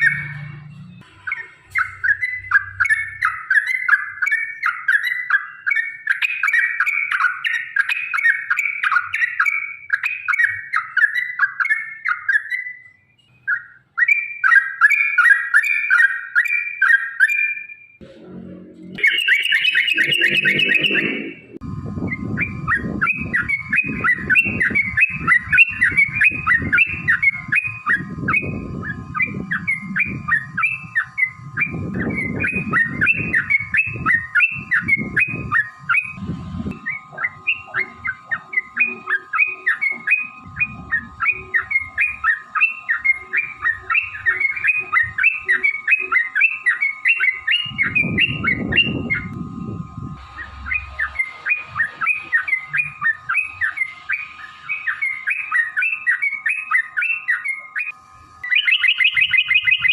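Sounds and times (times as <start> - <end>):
bird singing repeated chirps: 0.0 - 18.0, 18.9 - 36.2, 36.8 - 49.3, 50.4 - 59.9
low rumbles: 18.0 - 19.3.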